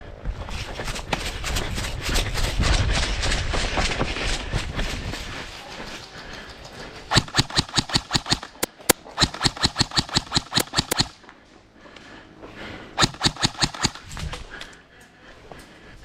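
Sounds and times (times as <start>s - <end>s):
airsoft gun rapid firing: 7.1s - 11.2s, 13.0s - 14.2s.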